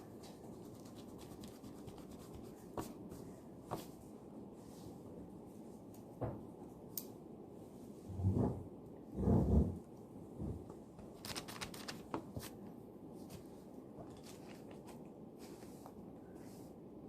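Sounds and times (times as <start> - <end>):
paper rustling: 11.0 - 12.6, 13.2 - 16.0.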